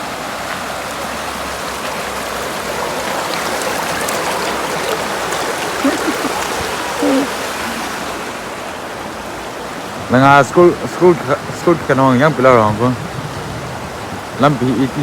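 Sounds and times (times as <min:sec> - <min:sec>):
floodwater rushing: 0:00.0 - 0:15.0
short calls: 0:05.7 - 0:07.5.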